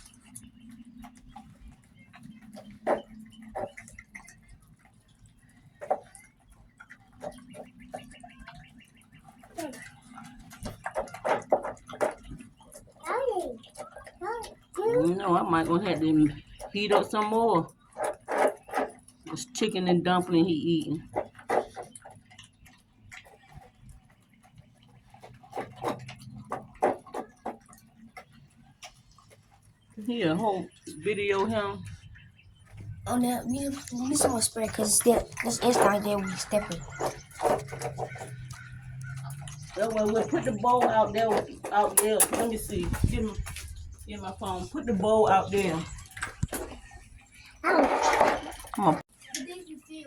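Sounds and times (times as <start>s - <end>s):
dog chewing and smacking: 0.0s - 19.7s, 20.8s - 49.6s
sharp clicks and knocks: 20.9s - 29.6s.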